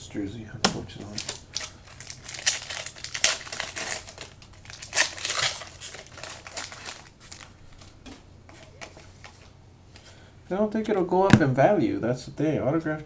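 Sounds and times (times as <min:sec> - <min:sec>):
plastic packaging crinkling: 0:01.0 - 0:08.0.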